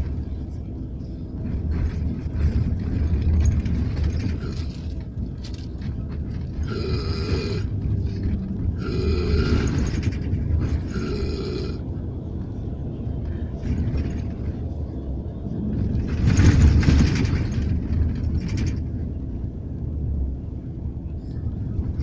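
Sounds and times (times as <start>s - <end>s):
bus engine rumble: 0.0s - 22.0s
man snoring: 6.7s - 7.7s, 8.8s - 9.9s, 10.9s - 11.8s.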